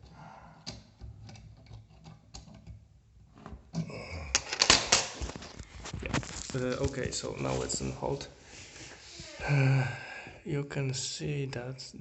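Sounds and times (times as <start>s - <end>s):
clicking and rattling: 0.0s - 3.7s, 4.3s - 7.8s
small clicks and knocks: 0.6s - 7.2s.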